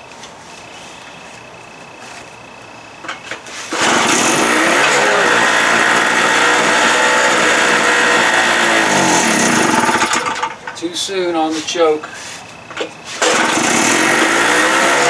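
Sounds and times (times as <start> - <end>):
generator pull-start: 3.1 - 10.9, 12.0 - 15.0
small two-stroke engine running: 3.7 - 10.8, 13.2 - 15.0.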